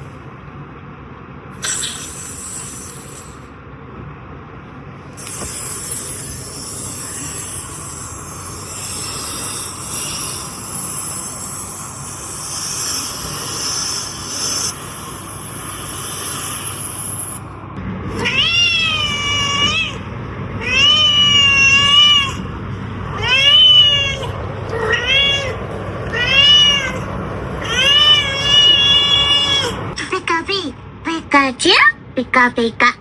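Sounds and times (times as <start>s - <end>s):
steady hissing noise: 1.5s - 3.6s, 5.0s - 30.0s
cat meowing: 18.1s - 30.0s.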